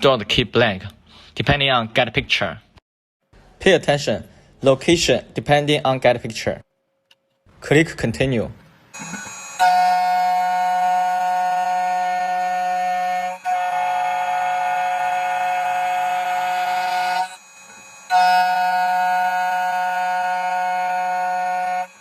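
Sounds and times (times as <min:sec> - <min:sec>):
cutter motor whining: 0:09.0 - 0:22.0.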